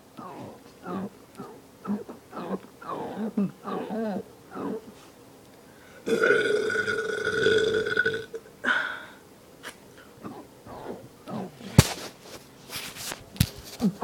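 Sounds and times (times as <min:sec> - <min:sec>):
throat clicks: 0:00.1 - 0:04.8
man burping: 0:00.2 - 0:04.9, 0:06.0 - 0:08.5.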